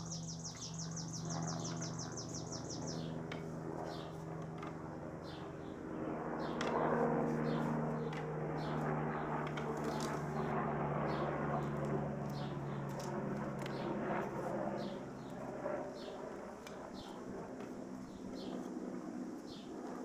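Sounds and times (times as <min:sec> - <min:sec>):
small birds chirping: 0:00.0 - 0:04.2
steady low hum: 0:00.0 - 0:09.4.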